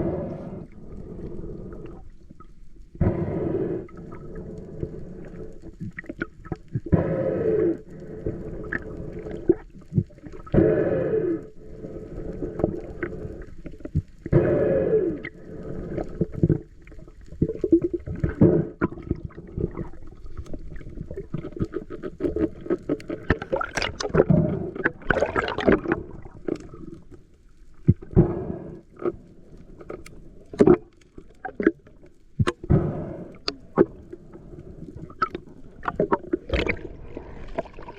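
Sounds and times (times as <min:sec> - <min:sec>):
breathing through a snorkel: 0:00.0 - 0:02.2, 0:03.0 - 0:05.9, 0:06.8 - 0:09.7, 0:10.3 - 0:16.8, 0:23.1 - 0:26.0, 0:28.0 - 0:30.6, 0:32.6 - 0:37.9
water splashing and gurgling: 0:16.1 - 0:28.2, 0:29.8 - 0:32.7, 0:33.4 - 0:37.9.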